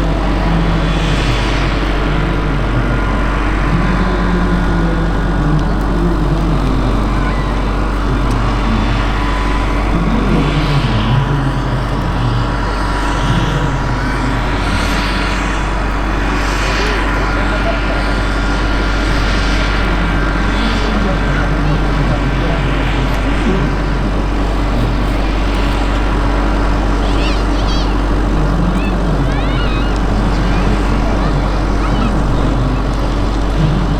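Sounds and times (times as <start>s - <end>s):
deep rumble: 0.0s - 33.9s
model helicopter whine: 0.0s - 33.9s.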